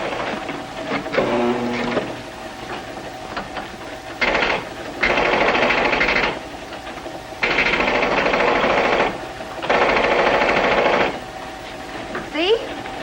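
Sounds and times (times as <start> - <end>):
machine-gun fire: 4.2 - 6.4, 7.4 - 11.2.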